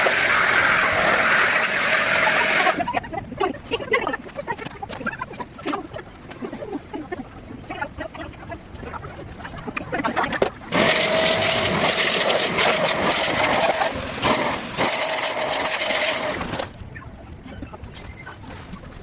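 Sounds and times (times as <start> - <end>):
small electric motor humming: 0.0 - 2.8, 10.7 - 16.7.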